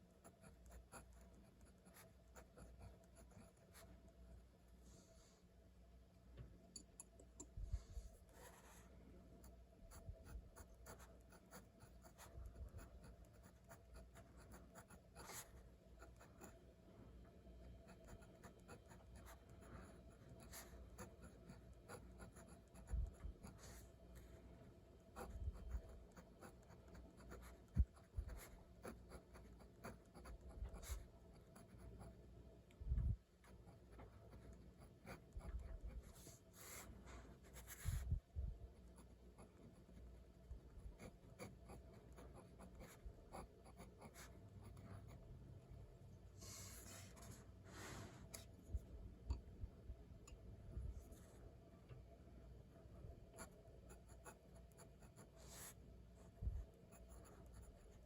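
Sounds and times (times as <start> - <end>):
pen scratching on paper: 0.2 - 3.9, 9.9 - 16.6, 17.8 - 23.8, 25.2 - 32.2, 33.4 - 38.1, 40.8 - 45.2, 46.4 - 47.4, 53.4 - 55.8, 56.9 - 58.0.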